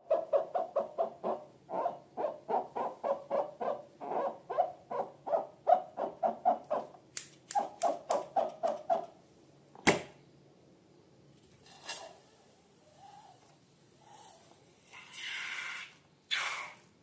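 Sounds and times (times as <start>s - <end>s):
sharp snap: 7.1s - 8.3s.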